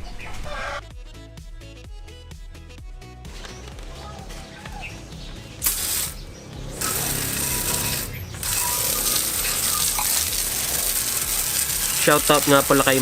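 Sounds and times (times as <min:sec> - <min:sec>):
paint spray hiss: 0:05.6 - 0:13.0.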